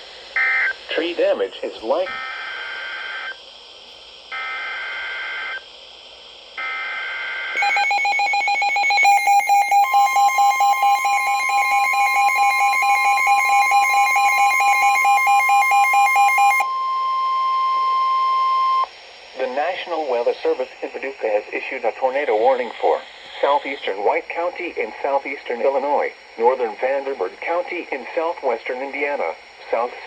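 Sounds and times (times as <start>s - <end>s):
pulsing electronic alarm: 6.6s - 18.9s
steady warning alarm tone: 6.6s - 29.8s.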